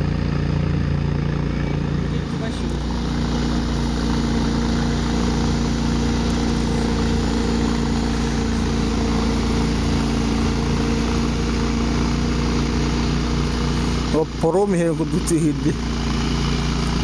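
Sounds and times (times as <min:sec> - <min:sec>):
engine humming: 0:00.0 - 0:17.0.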